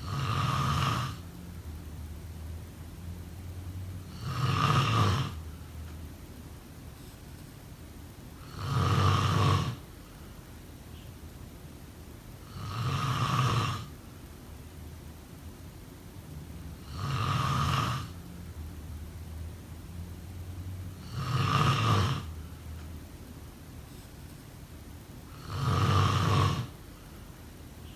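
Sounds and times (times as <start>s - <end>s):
person snoring: 0.0s - 1.2s, 4.1s - 5.4s, 8.4s - 9.8s, 12.4s - 13.9s, 16.8s - 18.2s, 21.0s - 22.4s, 25.3s - 26.8s.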